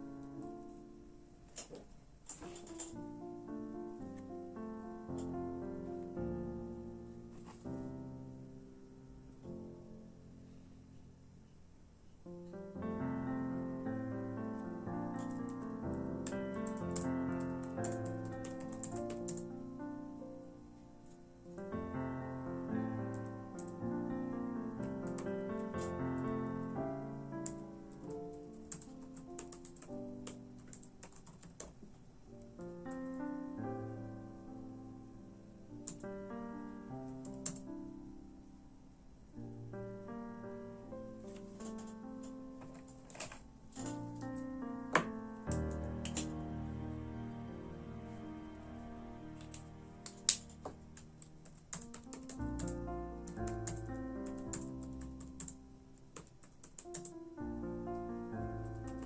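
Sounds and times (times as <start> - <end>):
soft piano music: 0.0 - 59.0
keyboard typing clicks: 15.1 - 19.5, 24.8 - 26.3, 27.4 - 31.8, 45.0 - 46.4, 49.4 - 57.2, 58.6 - 59.0
soft background music: 39.5 - 59.0
keyboard keystroke clicks: 49.4 - 55.6.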